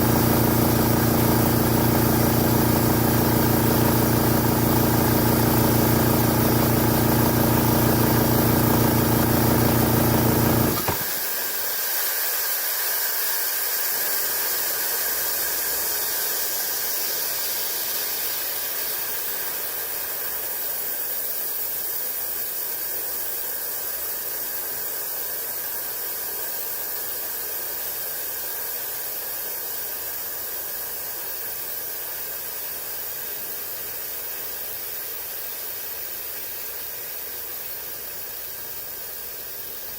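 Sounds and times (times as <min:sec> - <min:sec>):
air compressor running: 0:00.0 - 0:22.7.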